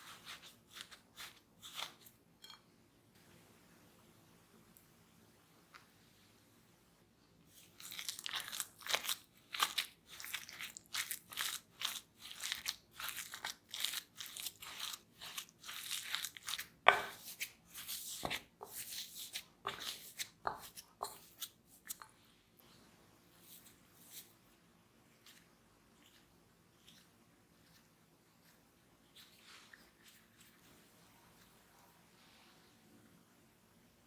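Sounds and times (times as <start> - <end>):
crunching of crispy food: 7.6 - 16.8.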